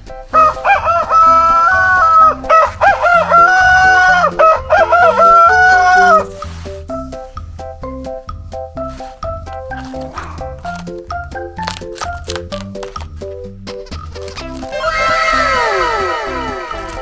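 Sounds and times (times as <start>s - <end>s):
music with steady beat: 0.0s - 17.0s
rooster crowing: 0.4s - 6.3s, 14.7s - 17.0s.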